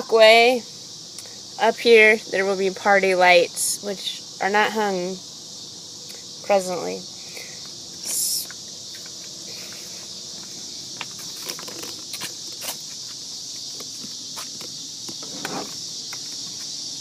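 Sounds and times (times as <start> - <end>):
crickets chirring: 0.0 - 17.0
footsteps on walkway: 8.9 - 14.8.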